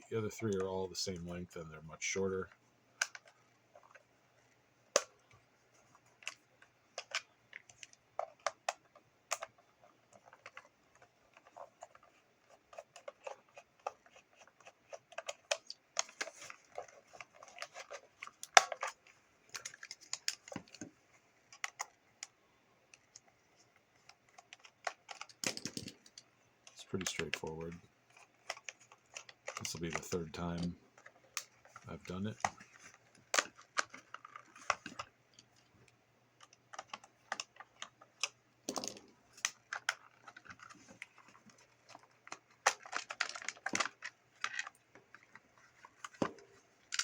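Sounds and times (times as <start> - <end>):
small screws being set down: 25.1 - 26.2, 38.7 - 39.9.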